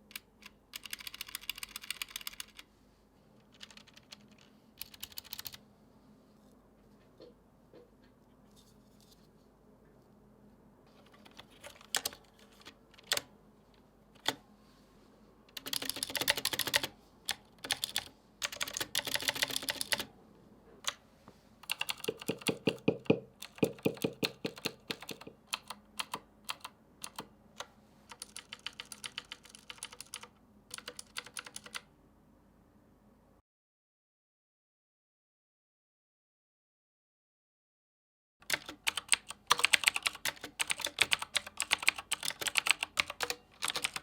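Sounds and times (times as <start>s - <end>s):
mechanical keyboard keystrokes: 0.1s - 2.7s, 3.5s - 5.6s, 11.0s - 13.3s, 14.2s - 14.4s, 15.6s - 20.1s, 21.6s - 31.9s, 38.4s - 44.0s.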